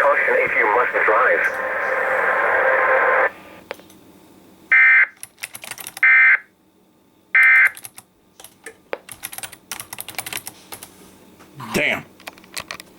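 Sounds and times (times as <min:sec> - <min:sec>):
radio hiss: 0:00.0 - 0:03.7
keyboard clicks: 0:05.2 - 0:06.0, 0:07.4 - 0:10.9.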